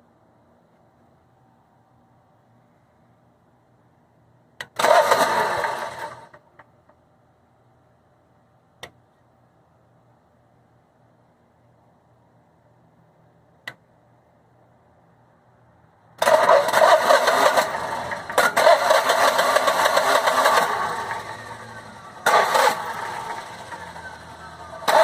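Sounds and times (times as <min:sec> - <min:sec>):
generator engine cranking: 0:04.6 - 0:06.4, 0:16.2 - 0:25.0.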